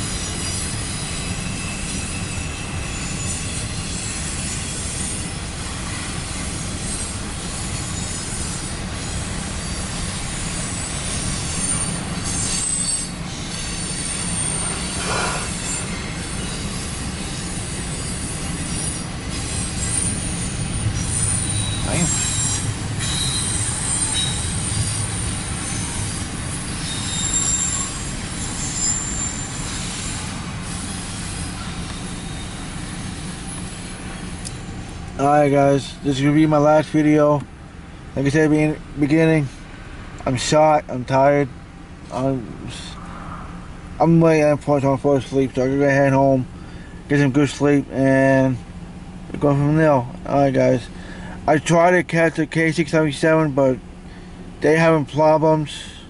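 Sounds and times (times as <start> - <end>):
high-pitched wheel squeals: 0.0 - 51.8
train wheels rumbling on rail: 0.0 - 56.0.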